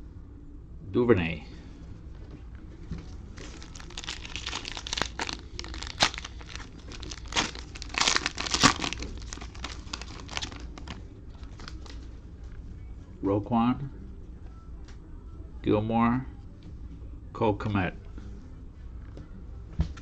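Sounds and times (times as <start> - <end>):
plastic wrapper crinkling: 3.4 - 12.0.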